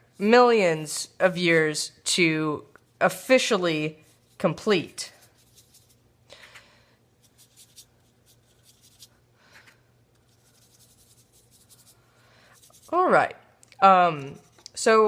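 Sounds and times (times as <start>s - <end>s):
low steady hum: 0.0s - 15.0s
hands scratching over a desk: 5.1s - 6.0s, 7.2s - 9.1s, 10.2s - 12.0s, 12.6s - 13.0s.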